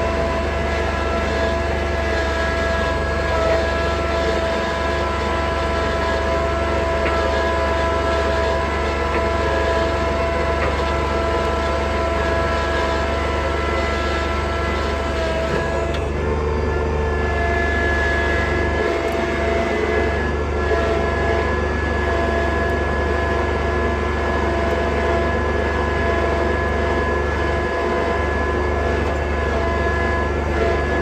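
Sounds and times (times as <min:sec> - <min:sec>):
tractor engine running: 0:00.0 - 0:20.5.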